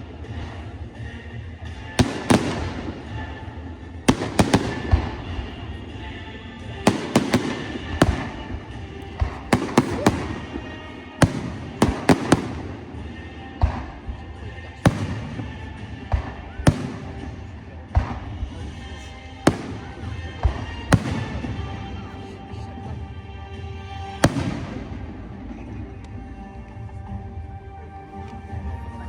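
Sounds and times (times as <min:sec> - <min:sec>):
fireworks bursting: 0:00.0 - 0:06.0, 0:06.6 - 0:22.0, 0:24.2 - 0:25.3
music playing: 0:00.0 - 0:29.0.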